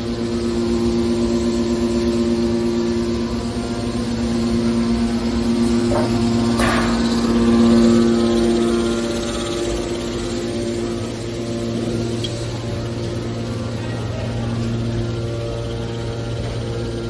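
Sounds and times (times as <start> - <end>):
hydraulic power unit humming: 0.0 - 17.0
metal scraping: 5.8 - 7.5.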